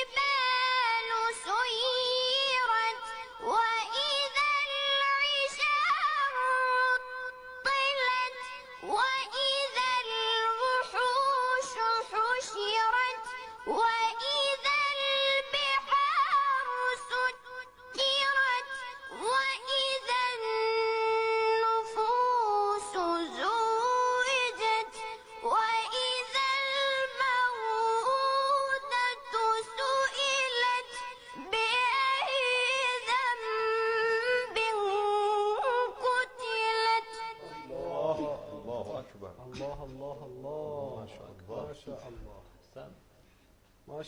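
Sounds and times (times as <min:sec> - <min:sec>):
solo voice reciting melodically: 0:07.7 - 0:42.4.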